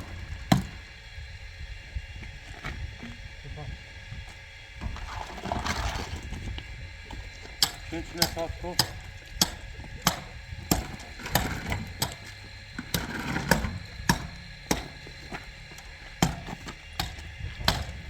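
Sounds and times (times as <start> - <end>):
hand tool knocking: 7.6 - 12.2.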